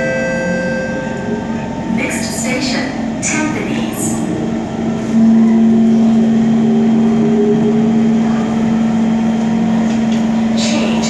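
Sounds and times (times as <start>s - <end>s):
train motor electric hum: 0.0s - 11.0s
rising whine: 4.8s - 10.1s.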